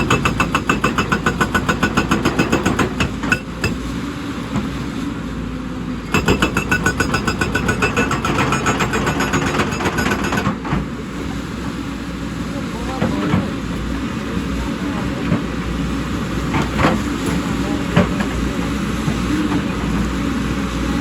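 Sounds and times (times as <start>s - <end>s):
hydraulic breaker hammering rock: 0.0s - 3.9s, 6.1s - 10.9s
diesel engine running: 0.0s - 21.0s.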